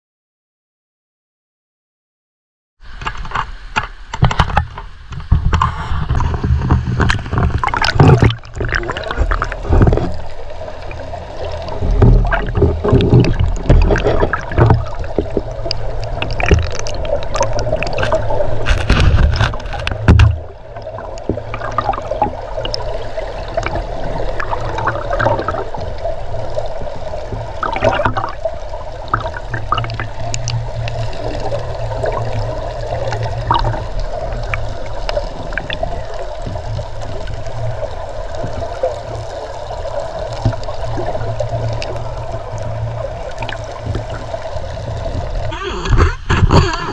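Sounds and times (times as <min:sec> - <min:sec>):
muffled underwater river rush: 0:02.8 - 0:46.9
knocks and bumps: 0:04.2 - 0:10.2, 0:11.8 - 0:15.5, 0:18.0 - 0:20.5, 0:45.2 - 0:46.9.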